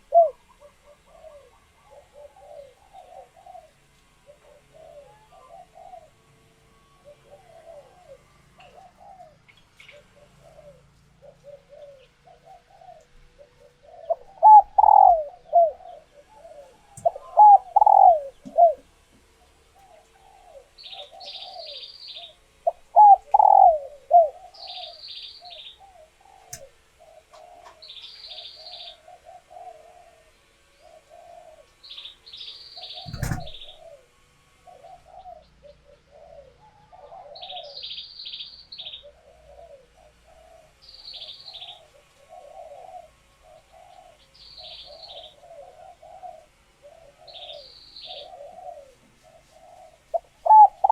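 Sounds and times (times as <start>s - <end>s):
doves cooing: 0.0s - 50.9s
small bird chirping: 30.7s - 34.0s, 43.6s - 46.4s.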